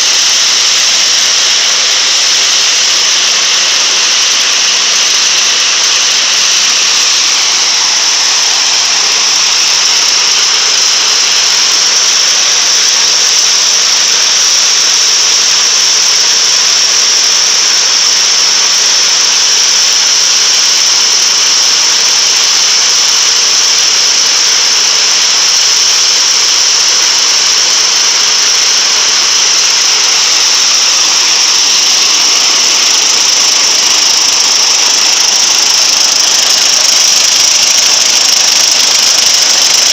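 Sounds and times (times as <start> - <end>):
threshing machine whine: 0.0 - 39.9
motor hum: 26.9 - 39.9.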